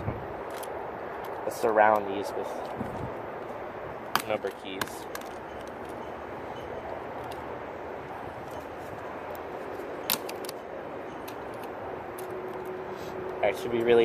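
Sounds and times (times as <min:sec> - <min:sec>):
wind on microphone: 0:00.0 - 0:00.5, 0:02.6 - 0:04.0.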